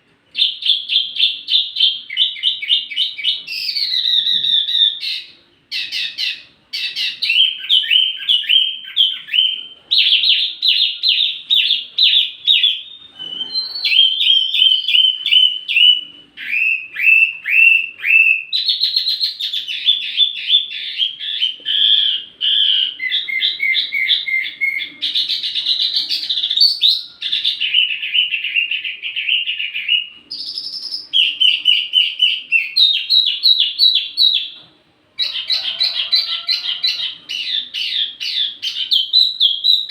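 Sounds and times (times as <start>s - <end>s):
small songbird singing trills: 0.3s - 34.6s, 36.9s - 39.9s.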